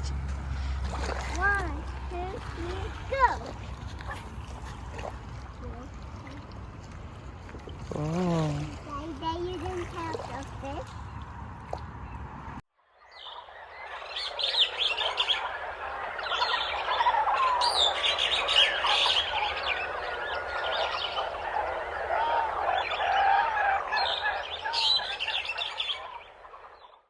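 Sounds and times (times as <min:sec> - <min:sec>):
small birds chirping: 0:13.0 - 0:27.0.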